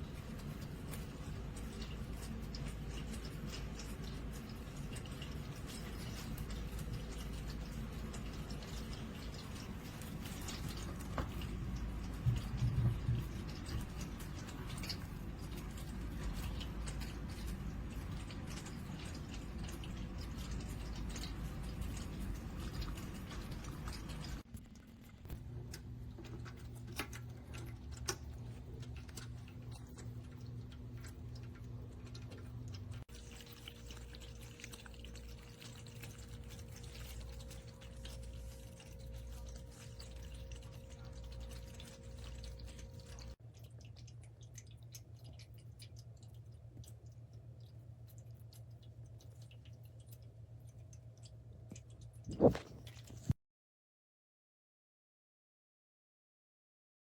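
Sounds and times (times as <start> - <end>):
electric pump hum: 0.0 - 43.5
water trickling and dripping: 0.0 - 53.4.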